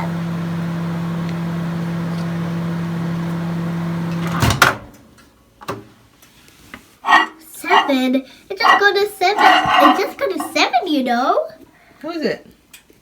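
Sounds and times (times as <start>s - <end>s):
microwave oven humming: 0.0s - 5.0s.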